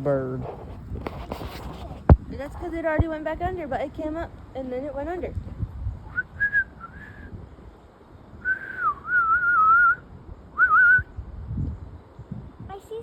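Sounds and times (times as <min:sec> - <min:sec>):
person whistling a warbling tune: 0:06.1 - 0:07.3, 0:08.4 - 0:10.0, 0:10.6 - 0:11.1.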